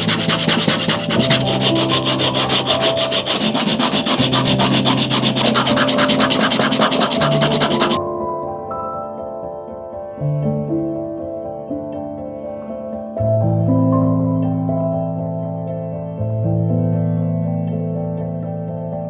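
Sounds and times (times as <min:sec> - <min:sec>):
fast abrasive strokes: 0:00.0 - 0:08.0.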